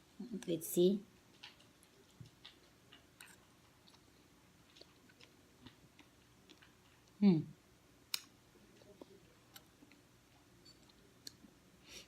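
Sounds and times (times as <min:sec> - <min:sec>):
person chewing: 0:01.4 - 0:07.2.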